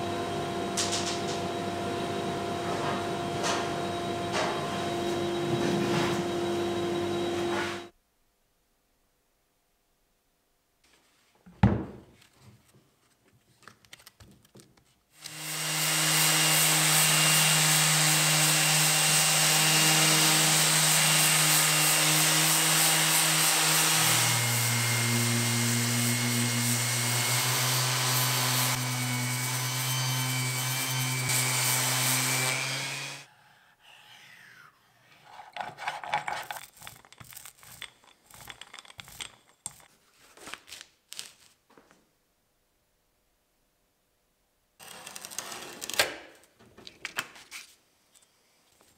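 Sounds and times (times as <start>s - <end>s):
power tool cutting wood: 15.2s - 33.3s
handling rustles: 35.3s - 42.0s.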